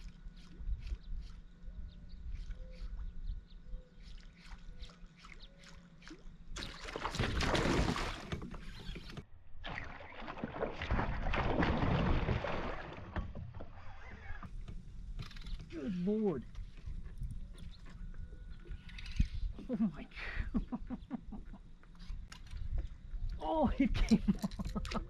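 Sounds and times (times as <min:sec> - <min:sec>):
fish splashing: 0:04.1 - 0:08.5, 0:09.6 - 0:13.2.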